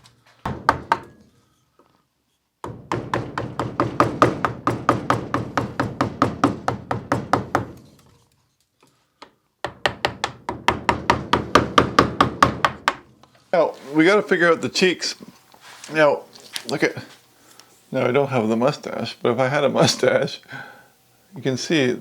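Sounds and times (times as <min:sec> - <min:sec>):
mallet tapping a carving gouge: 0:09.6 - 0:13.0.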